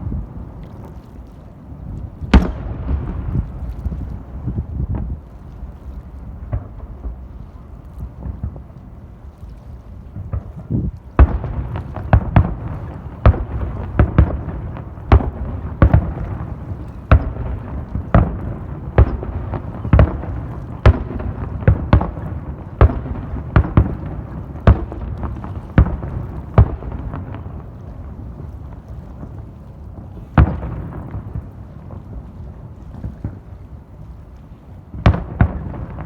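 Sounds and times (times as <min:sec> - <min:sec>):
low rumble and echo: 0:00.0 - 0:36.0
firework shells booming: 0:02.3 - 0:05.2, 0:11.2 - 0:27.8.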